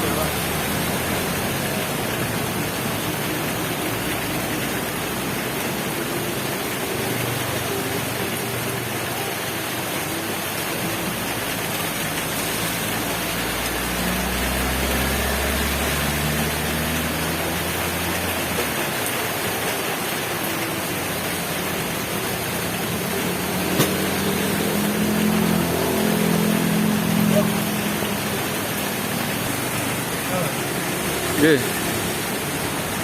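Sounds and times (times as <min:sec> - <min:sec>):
heavy rain falling: 0:00.0 - 0:33.0
vehicle engine passing by: 0:13.6 - 0:18.4, 0:23.3 - 0:33.0.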